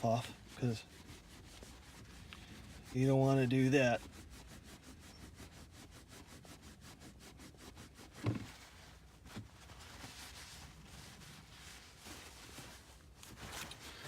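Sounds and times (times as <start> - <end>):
paper towel rubbing back and forth: 0.0 - 14.0
dull knock: 8.2 - 8.5.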